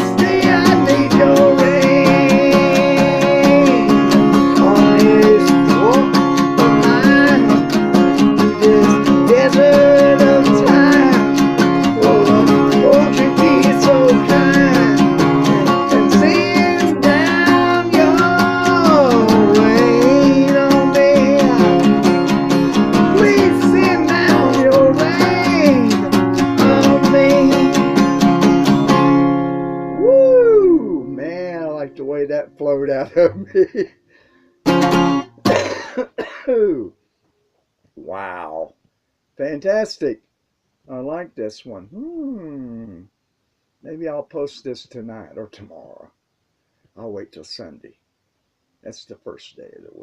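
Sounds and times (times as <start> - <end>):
wordless vocal melody: 0.0 - 32.1
acoustic guitar strumming: 0.0 - 36.4.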